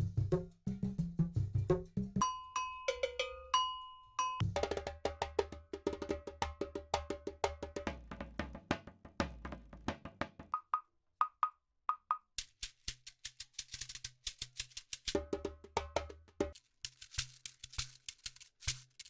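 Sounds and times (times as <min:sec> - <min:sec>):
hand percussion groove: 0:00.0 - 0:19.0
fast shaker pattern: 0:12.2 - 0:19.0.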